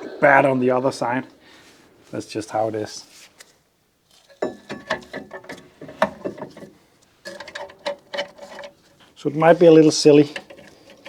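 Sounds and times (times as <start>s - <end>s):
metallic clicking and rattling: 4.4s - 9.1s, 9.8s - 11.0s.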